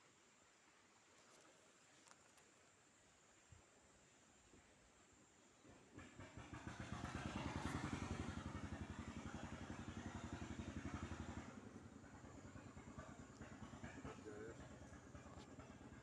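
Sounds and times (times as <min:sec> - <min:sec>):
small engine running: 0:05.7 - 0:16.0.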